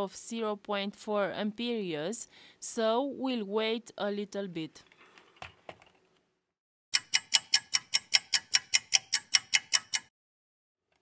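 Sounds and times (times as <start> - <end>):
clock ticking: 6.9 - 10.1.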